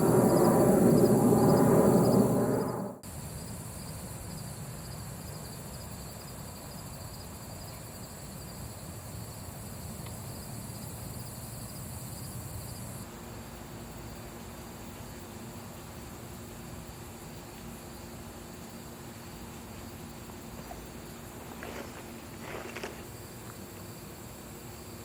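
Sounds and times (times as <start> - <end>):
faint insect chirring: 0.0 - 25.0
outdoor background noise: 0.0 - 25.0.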